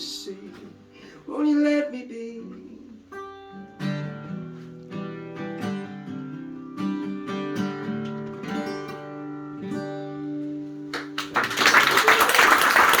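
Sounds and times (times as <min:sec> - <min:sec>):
acoustic guitar strumming: 0:00.0 - 0:11.2
audience applause: 0:11.0 - 0:13.0.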